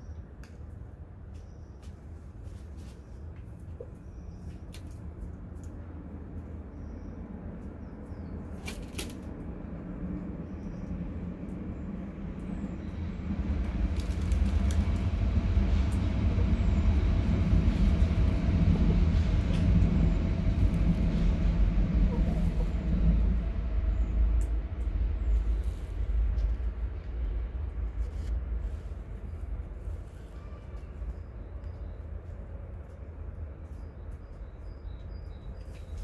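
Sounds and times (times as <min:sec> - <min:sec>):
train rumbling past: 0:09.3 - 0:36.0.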